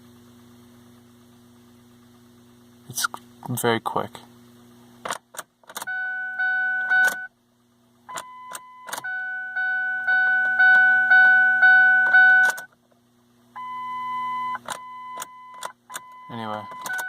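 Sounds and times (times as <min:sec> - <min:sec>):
dashboard warning chime beeping: 0:05.8 - 0:07.3, 0:08.1 - 0:12.7, 0:13.6 - 0:17.0
ignition key clicks: 0:08.1 - 0:09.2, 0:11.9 - 0:12.7, 0:14.6 - 0:17.0.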